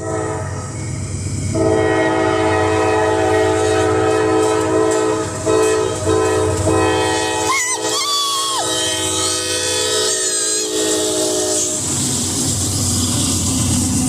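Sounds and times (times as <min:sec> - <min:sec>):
locomotive air horn chord: 0:00.0 - 0:00.7, 0:01.5 - 0:11.9.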